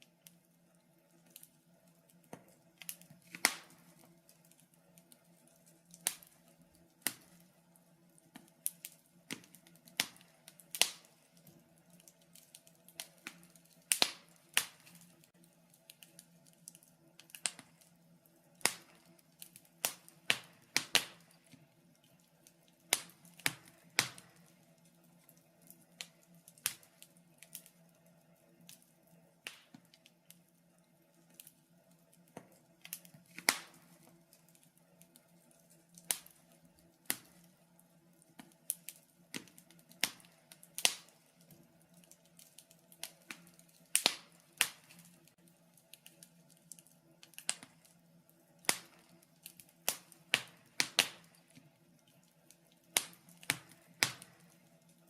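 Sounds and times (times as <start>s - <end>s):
faint steady hum: 0.0s - 55.0s
wood fire crackling: 0.0s - 55.0s.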